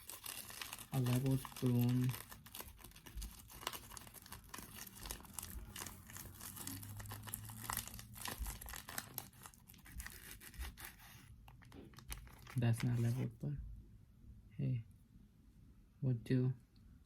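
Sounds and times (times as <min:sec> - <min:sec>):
plastic packet crinkling: 0:00.0 - 0:13.3.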